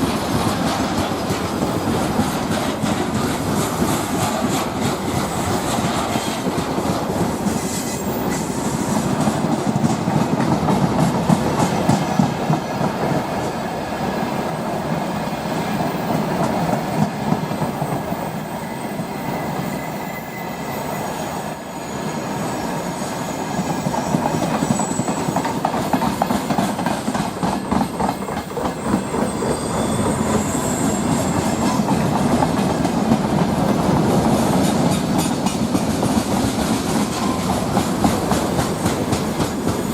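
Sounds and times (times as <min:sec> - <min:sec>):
train wheels clattering on rails: 0:00.0 - 0:39.9
high-pitched wheel squeals: 0:17.9 - 0:22.7, 0:23.6 - 0:26.4, 0:28.7 - 0:32.0.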